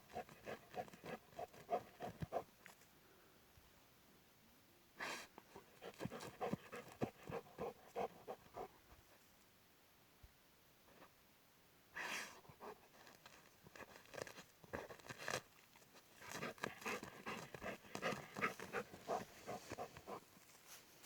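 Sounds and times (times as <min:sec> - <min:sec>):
dog making noisy sounds: 0:16.4 - 0:20.3.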